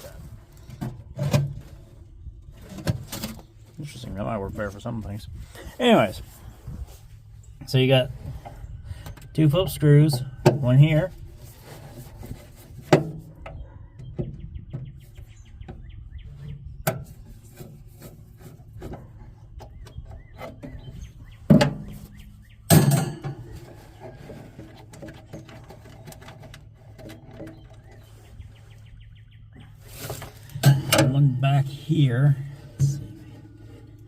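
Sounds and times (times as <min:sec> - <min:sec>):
low steady hum: 0:15.6 - 0:34.0
sharp metal knocks: 0:22.7 - 0:23.5.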